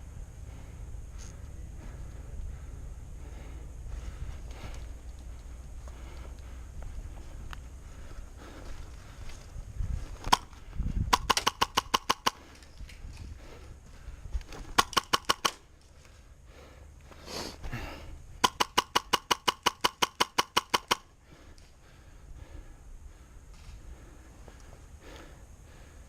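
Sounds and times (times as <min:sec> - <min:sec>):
airsoft gun firing: 0:10.3 - 0:12.4, 0:14.8 - 0:15.6, 0:18.4 - 0:21.1.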